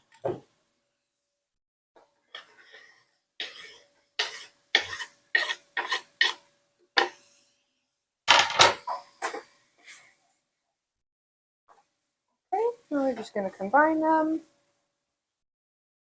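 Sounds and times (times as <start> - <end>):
utensil scraping and knocking pan: 3.4 - 7.2.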